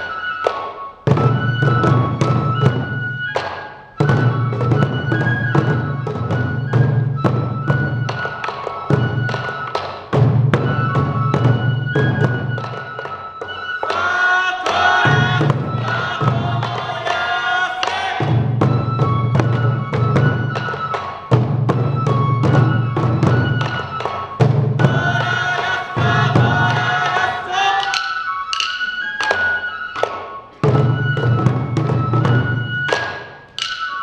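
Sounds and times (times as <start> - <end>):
taiko drums beating: 0.0 - 34.0
group singing: 13.8 - 19.0, 24.6 - 28.3.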